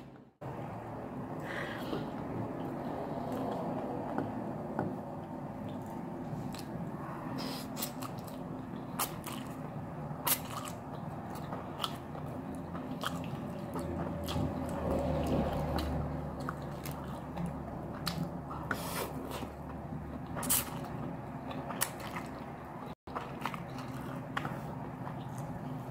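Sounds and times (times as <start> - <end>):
chewing and biting: 7.7 - 25.9.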